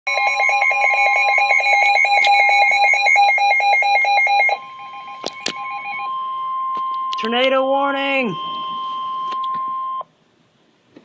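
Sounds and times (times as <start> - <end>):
rapid electronic beeping: 0.1 - 10.0
steady alarm tone: 0.1 - 10.0.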